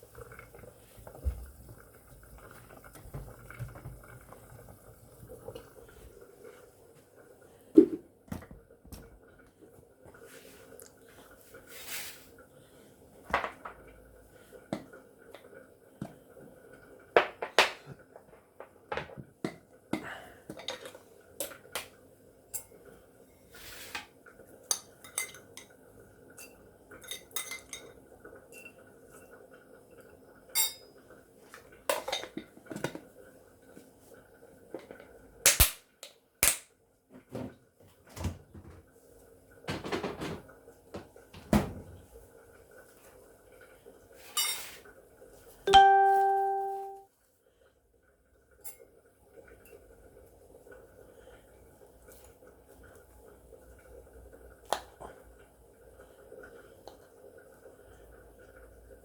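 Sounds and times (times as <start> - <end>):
dishes and utensils clattering: 24.6 - 25.7, 26.4 - 28.8, 31.9 - 33.0, 39.7 - 41.9, 44.3 - 44.8
faint steady hum: 37.8 - 59.0.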